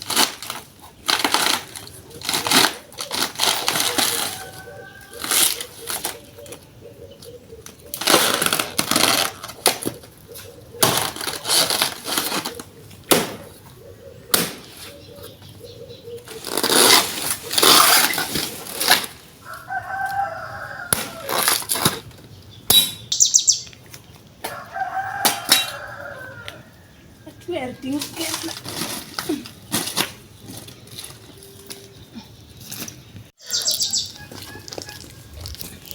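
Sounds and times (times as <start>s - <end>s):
chicken calls: 2.0s - 11.5s, 19.4s - 21.6s, 33.4s - 35.9s.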